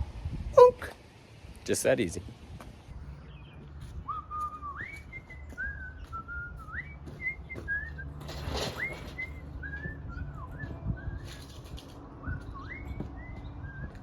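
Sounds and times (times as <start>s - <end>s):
person whistling a tune: 4.1s - 11.6s, 12.2s - 14.0s.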